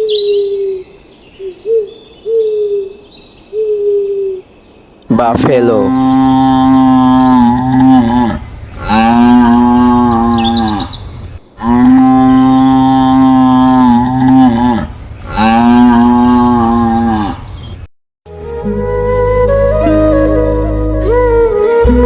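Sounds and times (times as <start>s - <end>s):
buffalo mooing: 5.2s - 11.0s, 11.6s - 17.4s.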